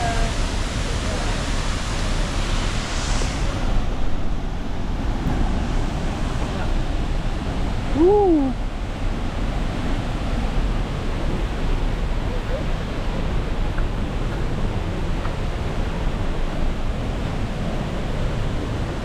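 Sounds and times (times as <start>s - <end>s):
waterfall and river rushing: 0.0s - 19.0s
voice-like call: 7.9s - 8.6s.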